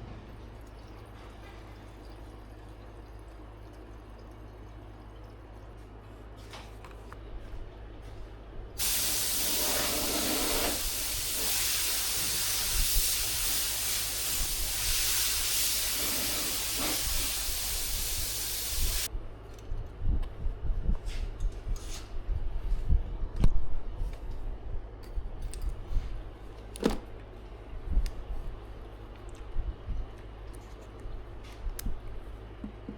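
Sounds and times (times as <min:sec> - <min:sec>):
pressurized gas spraying hiss: 0:08.8 - 0:19.1.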